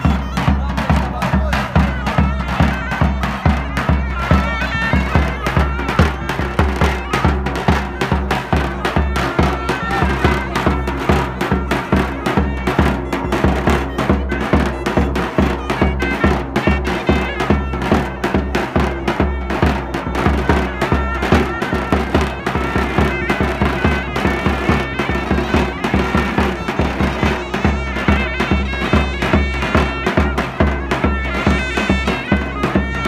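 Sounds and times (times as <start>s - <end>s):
fast heavy drum beat: 0.0s - 33.0s
shrill reed wind instrument melody: 0.0s - 33.0s.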